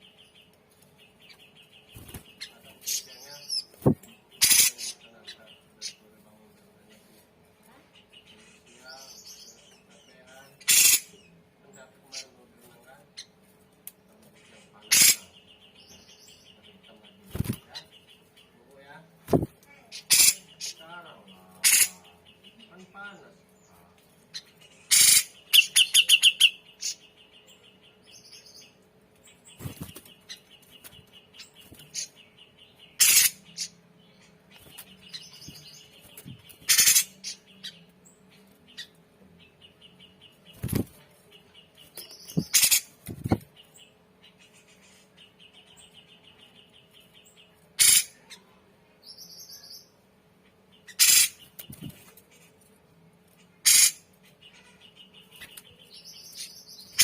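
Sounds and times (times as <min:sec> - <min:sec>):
bird harsh calls: 0:01.0 - 0:06.1, 0:10.5 - 0:11.4, 0:14.4 - 0:18.4, 0:19.3 - 0:23.0, 0:24.3 - 0:28.8, 0:29.4 - 0:37.9, 0:39.6 - 0:50.0, 0:50.6 - 0:52.6, 0:53.4 - 0:57.0.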